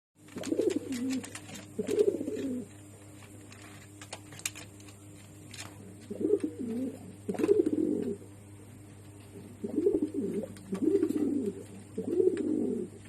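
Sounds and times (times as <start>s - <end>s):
pigeon cooing: 0.3s - 2.7s, 6.0s - 8.3s, 9.3s - 13.0s.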